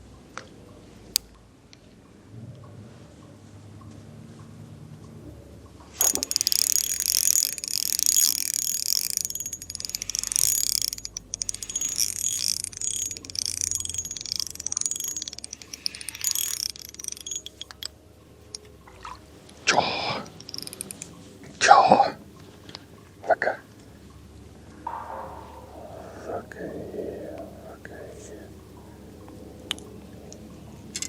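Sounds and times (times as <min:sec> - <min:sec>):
fishing reel drag clicking: 0:06.0 - 0:17.9, 0:20.2 - 0:21.2.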